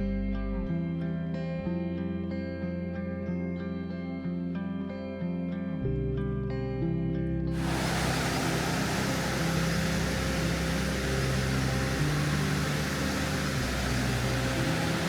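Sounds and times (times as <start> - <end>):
low engine hum: 7.6 - 15.0
road noise hiss: 7.6 - 15.0.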